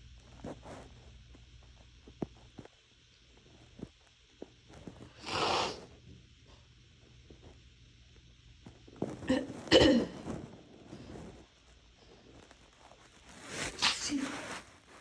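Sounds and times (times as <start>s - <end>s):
bed sheets rustling: 12.4s - 15.0s.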